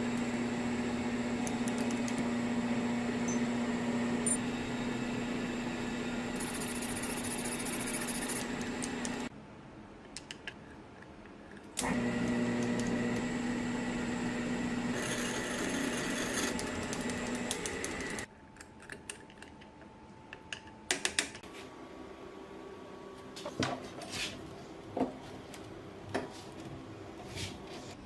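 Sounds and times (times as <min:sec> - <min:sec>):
power tool motor humming: 0:00.0 - 0:09.3, 0:11.8 - 0:18.3.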